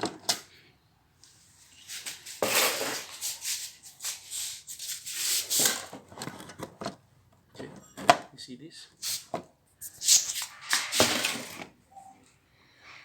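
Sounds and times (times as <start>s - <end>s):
hard plastic parts rattling and clicking: 5.4s - 8.4s, 10.3s - 11.8s.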